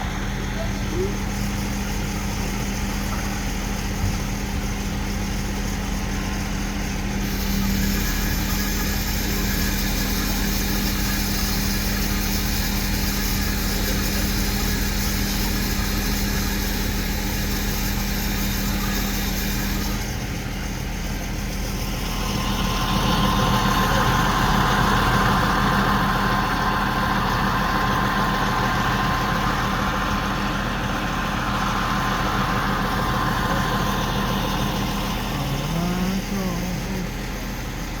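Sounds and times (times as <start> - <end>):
crane engine running: 0.0 - 38.0
hissing noise: 31.6 - 37.9.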